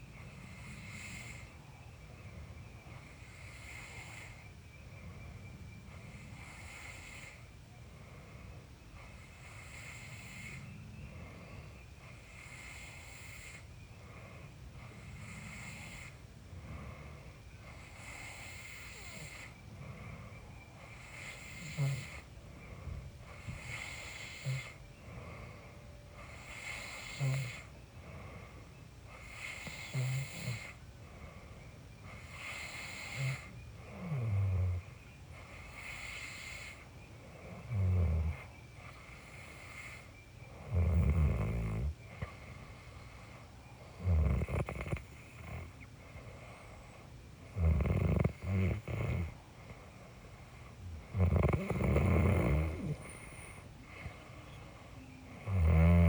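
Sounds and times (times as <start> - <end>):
insects pulsing: 0.1 - 56.0
person snoring: 21.0 - 22.2, 44.0 - 45.8, 47.5 - 49.4, 50.8 - 54.2, 55.4 - 56.0.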